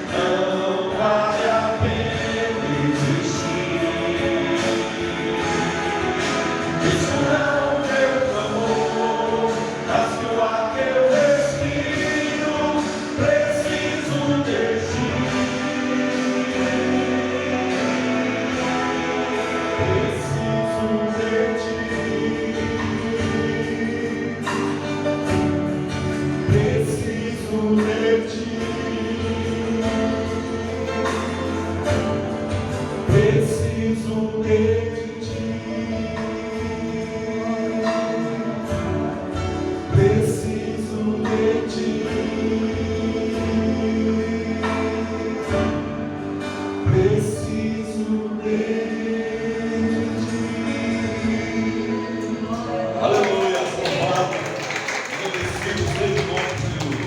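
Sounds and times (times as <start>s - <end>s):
gospel singing: 0.0s - 57.0s
instrumental accompaniment: 0.0s - 57.0s
percussion hits: 30.9s - 34.1s, 53.2s - 57.0s.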